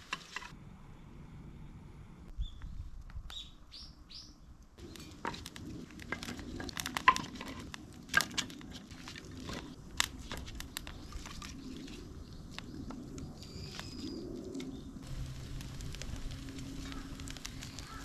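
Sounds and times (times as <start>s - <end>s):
bird chirps: 2.4s - 4.4s
wood fire crackling and popping: 4.8s - 18.0s.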